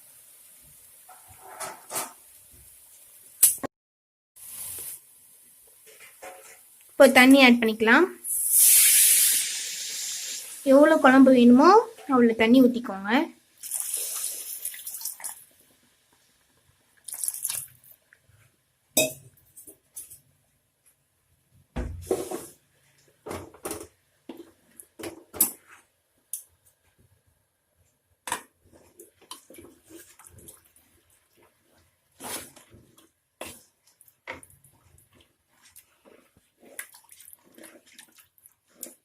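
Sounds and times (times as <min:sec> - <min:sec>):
water poured into pan: 0:08.3 - 0:10.7, 0:13.6 - 0:15.6, 0:17.0 - 0:17.9.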